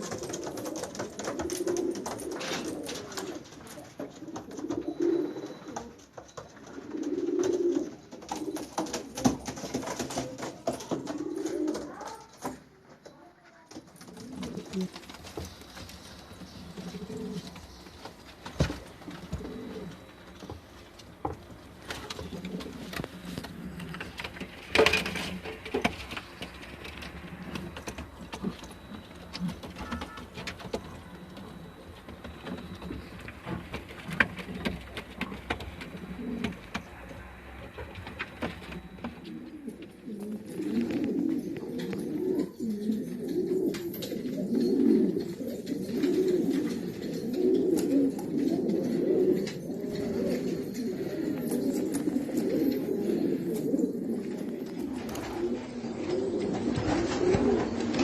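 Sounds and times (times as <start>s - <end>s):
pigeons cooing: 0.0s - 12.6s, 13.7s - 58.0s.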